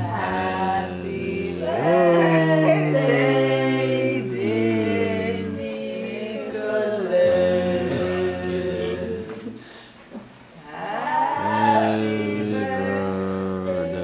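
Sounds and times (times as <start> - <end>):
slow sung melody: 0.0 - 14.0.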